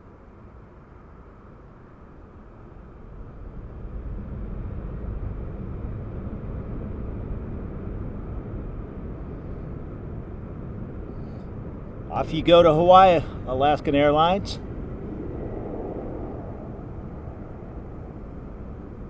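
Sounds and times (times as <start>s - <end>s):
jet airliner engines rumbling: 11.8s - 19.0s.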